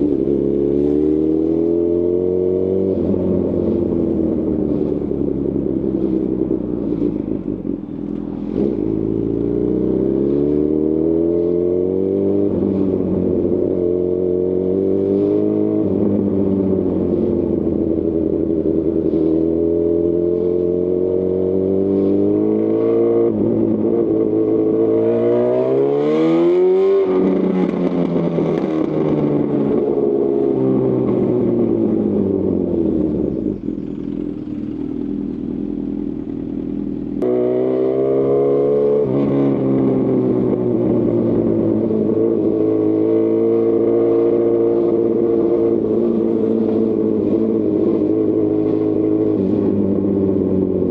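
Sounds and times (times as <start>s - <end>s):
motorcycle engine accelerating: 0.0s - 50.9s.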